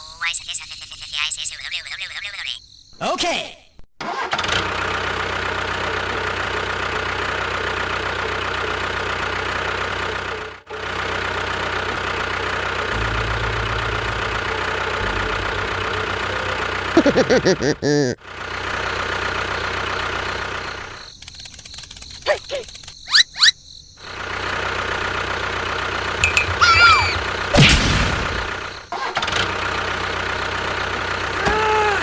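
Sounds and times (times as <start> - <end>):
wavering pitched sound: 12.9 - 17.2
motor running: 12.9 - 17.7, 29.6 - 32.0.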